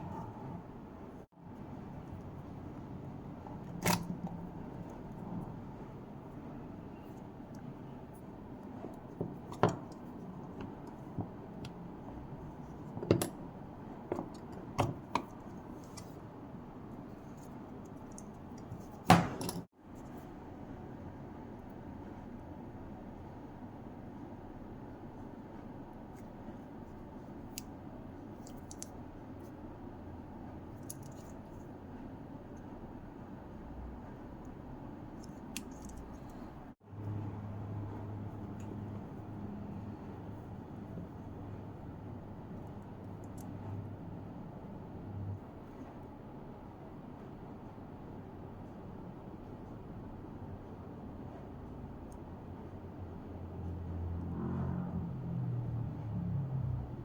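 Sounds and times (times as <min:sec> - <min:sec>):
low background hum: 0:00.0 - 0:57.0.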